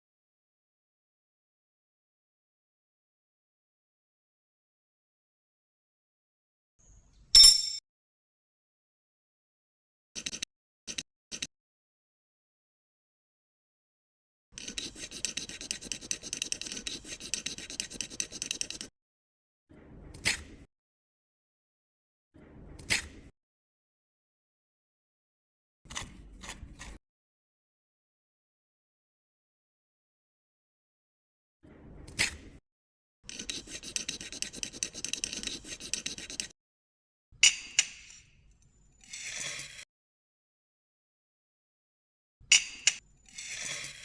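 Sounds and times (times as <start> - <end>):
rapid scratchy rasping: 14.6 - 18.9, 33.3 - 36.5.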